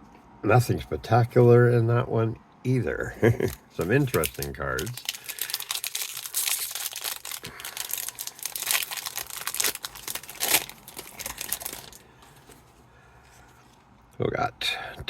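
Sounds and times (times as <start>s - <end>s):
foil wrapper crinkling and tearing: 3.8s - 12.1s.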